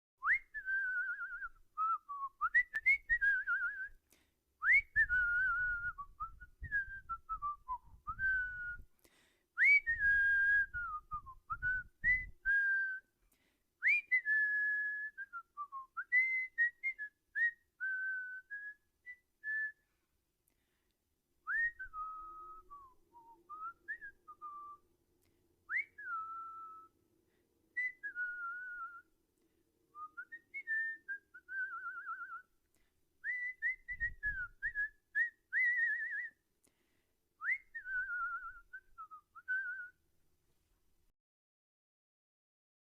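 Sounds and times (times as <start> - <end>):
person whistling: 0.2 - 4.0, 4.6 - 8.9, 9.6 - 13.1, 13.8 - 20.0, 21.4 - 24.8, 25.7 - 27.0, 27.7 - 29.1, 29.9 - 32.5, 33.2 - 36.4, 37.4 - 40.0.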